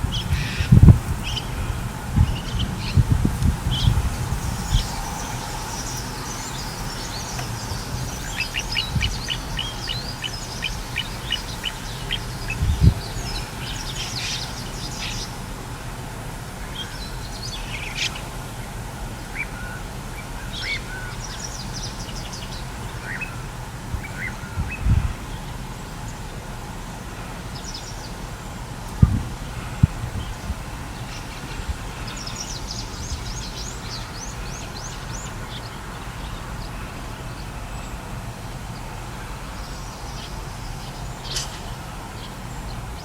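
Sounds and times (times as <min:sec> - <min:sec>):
plovers calling: 0:00.0 - 0:15.5
outdoor noise: 0:00.0 - 0:43.0.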